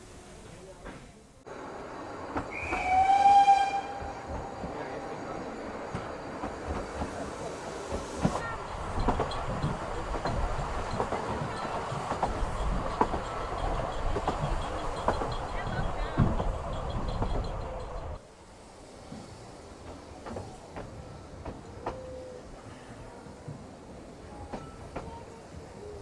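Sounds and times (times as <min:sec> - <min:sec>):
train rumbling: 0:00.0 - 0:26.0
steam locomotive whistle: 0:02.5 - 0:04.3
wheels clicking over rail joints: 0:07.9 - 0:18.2.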